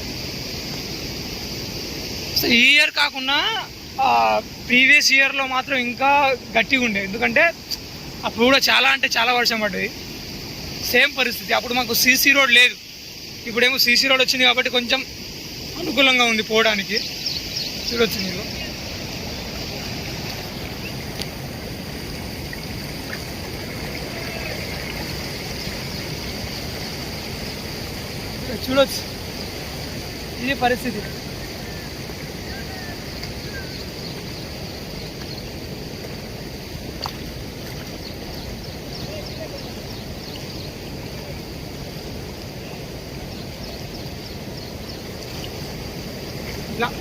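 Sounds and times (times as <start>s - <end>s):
water rushing: 0.0s - 47.0s
faint high chirps: 22.4s - 27.7s.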